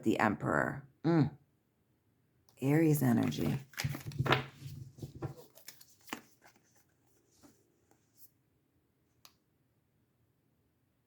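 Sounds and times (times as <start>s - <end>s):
cards rustling and sliding: 3.2s - 8.3s.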